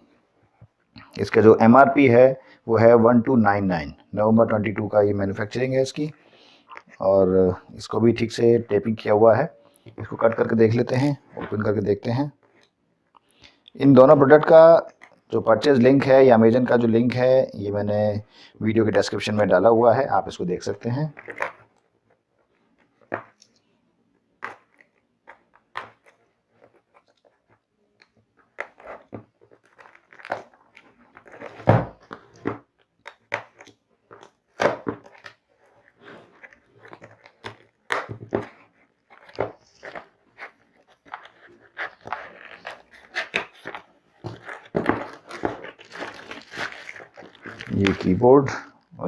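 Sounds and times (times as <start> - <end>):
packaging crackling and rustling: 24.4 - 48.5.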